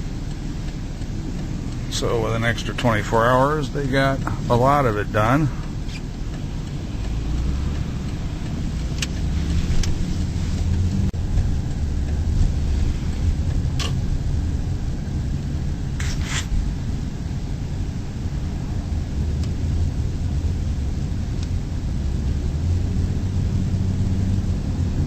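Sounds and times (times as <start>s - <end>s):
engine and road rumble: 0.0s - 25.0s.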